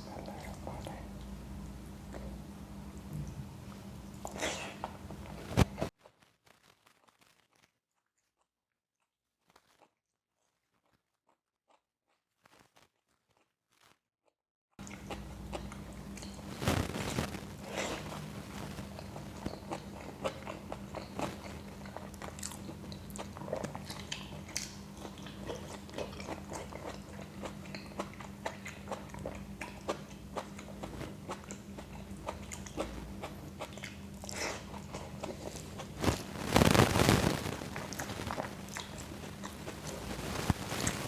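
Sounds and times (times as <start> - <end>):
steady low hum: 0.0 - 5.9, 14.8 - 41.0
person chewing with mouth clicks: 14.8 - 41.0.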